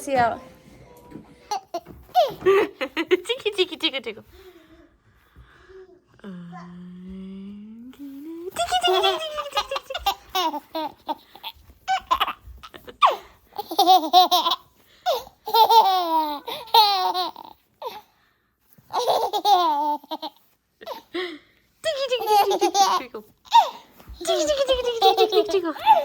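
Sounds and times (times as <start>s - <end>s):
baby laughing: 1.5s - 3.2s, 8.5s - 18.0s, 18.9s - 21.1s, 21.9s - 26.0s.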